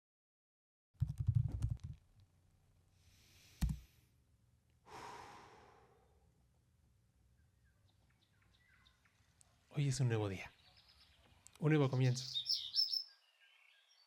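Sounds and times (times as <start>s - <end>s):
thumps and clicks: 3.6s - 3.8s
person sighing: 4.9s - 6.2s.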